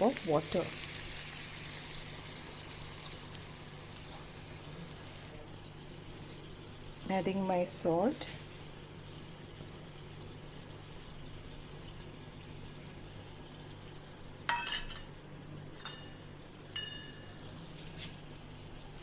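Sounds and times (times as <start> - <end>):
curry sizzling in a wok: 0.0 - 19.0
metal spoon clinking on wok: 14.5 - 15.1, 15.8 - 17.3.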